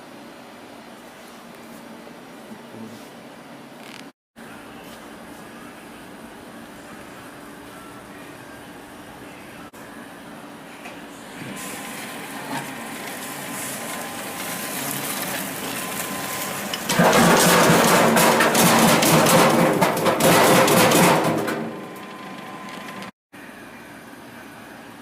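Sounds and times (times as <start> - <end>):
food dicing machine running: 11.4 - 23.1
rapid machine clatter: 16.7 - 23.1.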